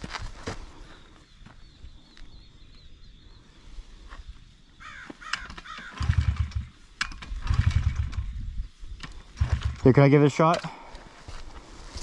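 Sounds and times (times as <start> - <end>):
crow cawing: 4.8 - 6.2
low engine rumbles: 9.2 - 10.9.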